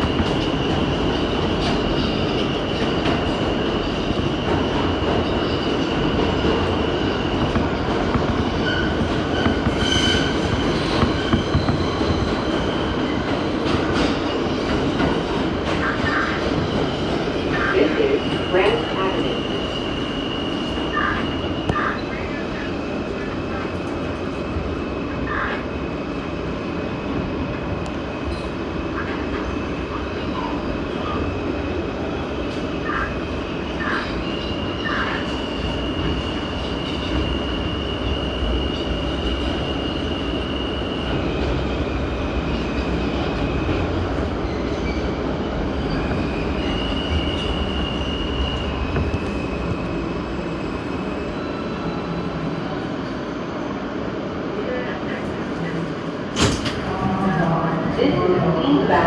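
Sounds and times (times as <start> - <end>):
subway train rumble and rattle: 0.0 - 59.0
train wheels squealing: 4.2 - 13.4, 18.3 - 22.2, 33.7 - 42.0, 42.6 - 53.2.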